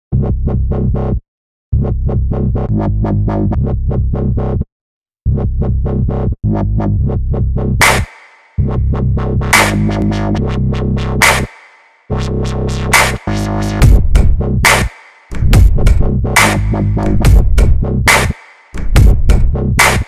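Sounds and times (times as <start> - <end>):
electronic dance music: 9.2 - 20.0.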